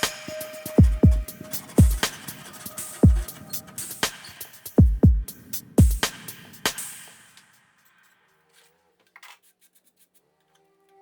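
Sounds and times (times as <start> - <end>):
snare-like hit: 0.0 - 1.0
booming kick drums: 0.8 - 2.0, 3.0 - 3.2, 4.8 - 6.0.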